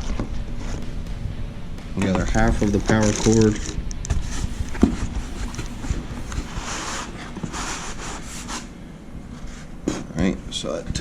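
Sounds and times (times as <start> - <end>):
cardboard scraping and sliding: 2.2 - 8.7.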